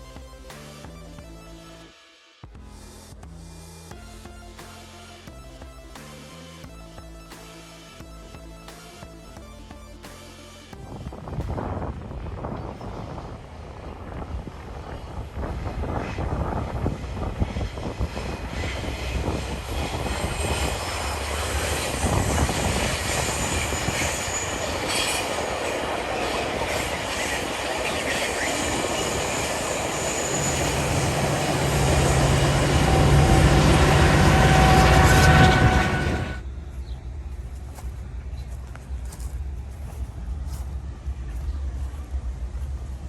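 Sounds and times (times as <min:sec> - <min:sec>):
train rolling past: 0:11.3 - 0:43.0
high wheel squeal: 0:14.9 - 0:36.6
low engine hum: 0:28.8 - 0:43.0.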